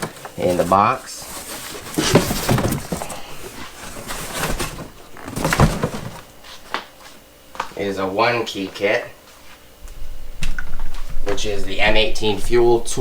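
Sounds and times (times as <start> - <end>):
cardboard box rustling: 0.0 - 6.4.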